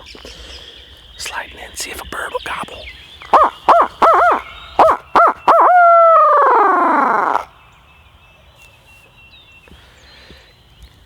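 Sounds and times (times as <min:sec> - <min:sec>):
owl hoots: 0:03.3 - 0:07.5.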